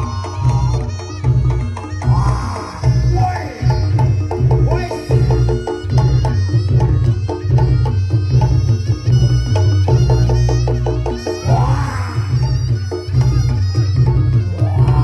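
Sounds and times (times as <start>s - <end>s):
loud percussion ensemble music: 0.0s - 15.0s.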